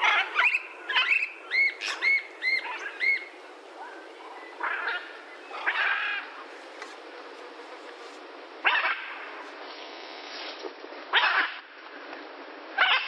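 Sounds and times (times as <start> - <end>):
macaw squawking: 0.0 - 3.3.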